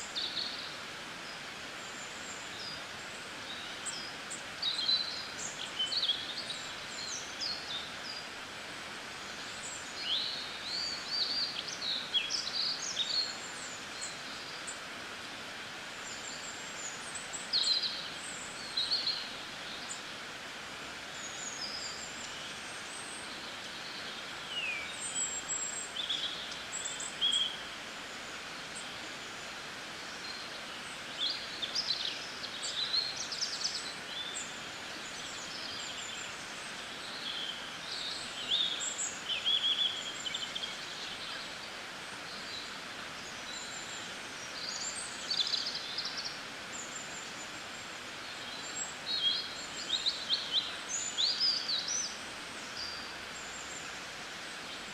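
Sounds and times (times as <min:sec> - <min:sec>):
steady background hiss: 0:00.0 - 0:54.9
small birds chirping: 0:21.0 - 0:54.9.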